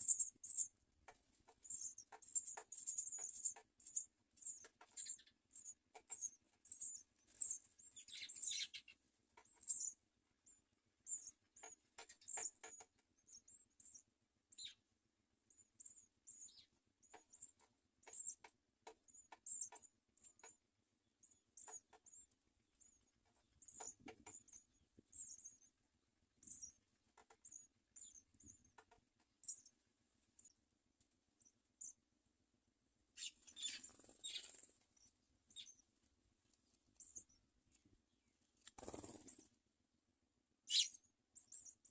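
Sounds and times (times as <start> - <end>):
rustling and taps in nest: 27.0 - 27.5, 28.4 - 29.4.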